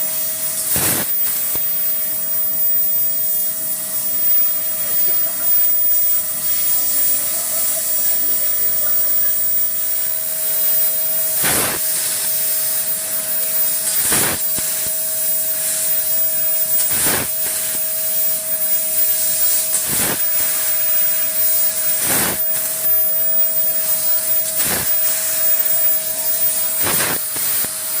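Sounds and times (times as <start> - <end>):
laser cutter hissing: 0.0 - 28.0
short bursts of noise: 8.0 - 13.0.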